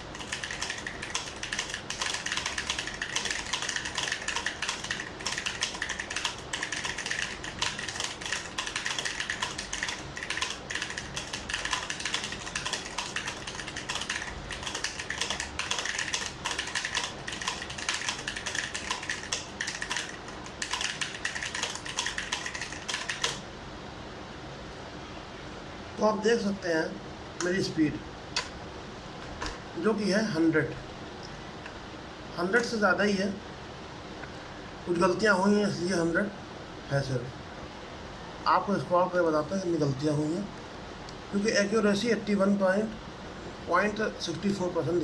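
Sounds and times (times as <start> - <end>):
fast mechanical keyboard typing: 0.0 - 23.5.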